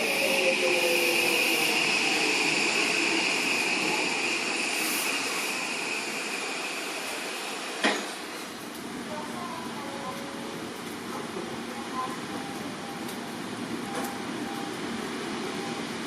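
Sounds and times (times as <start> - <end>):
electric train rolling past: 0.0 - 9.2.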